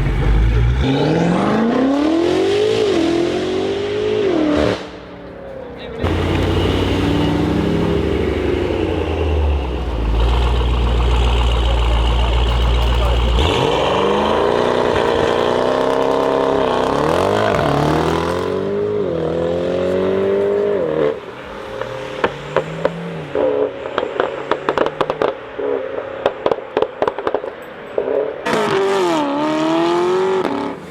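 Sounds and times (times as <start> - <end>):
engine revving: 0.0 - 5.0, 6.0 - 21.2, 28.5 - 30.9.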